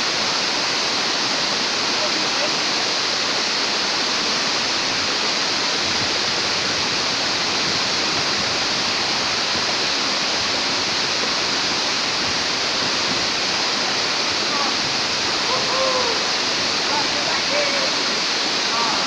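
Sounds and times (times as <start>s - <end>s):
waterfall pouring: 0.0s - 19.0s.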